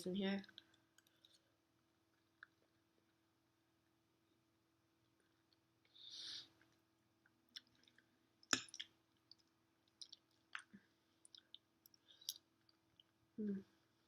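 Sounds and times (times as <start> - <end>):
person chewing food: 0.5 - 3.2, 5.4 - 13.2.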